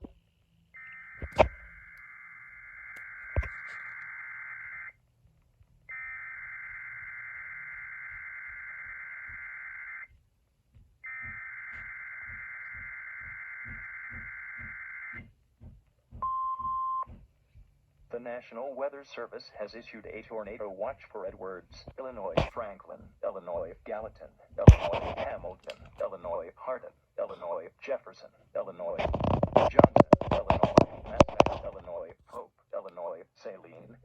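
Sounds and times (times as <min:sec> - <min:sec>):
steady attention tone: 0:00.8 - 0:04.9, 0:05.9 - 0:10.1, 0:11.0 - 0:15.2.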